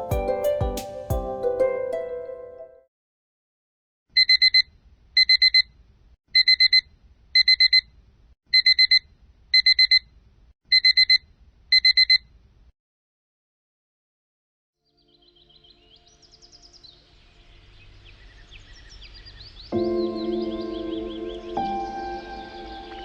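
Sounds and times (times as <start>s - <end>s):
phone alarm beeps: 4.2s - 5.7s, 6.4s - 6.8s, 7.4s - 7.9s, 8.6s - 9.0s, 9.6s - 10.0s, 10.7s - 11.2s, 11.8s - 12.2s.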